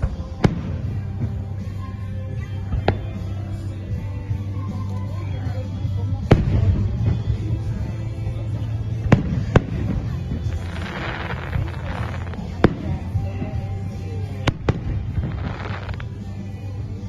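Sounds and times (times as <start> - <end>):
crackling sparks: 8.9 - 13.2, 13.8 - 16.8
fireworks bangs: 9.0 - 16.2.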